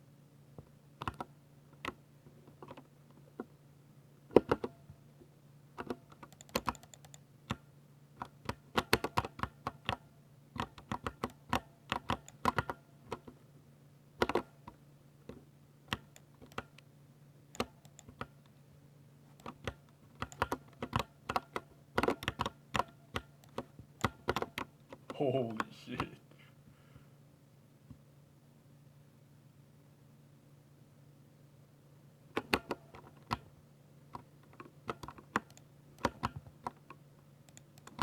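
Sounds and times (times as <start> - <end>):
faint steady hum: 0.0 - 38.0
typing on mechanical keyboard: 5.8 - 7.2, 8.2 - 10.0, 10.6 - 13.3, 15.9 - 16.7, 19.4 - 24.7.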